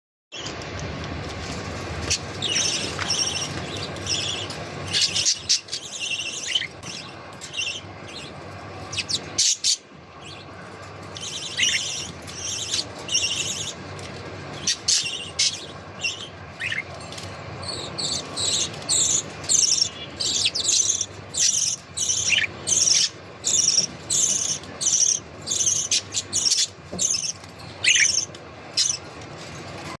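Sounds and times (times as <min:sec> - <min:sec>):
budgerigars chirping: 0:02.1 - 0:08.3, 0:11.2 - 0:13.8, 0:14.6 - 0:16.9, 0:17.6 - 0:29.0.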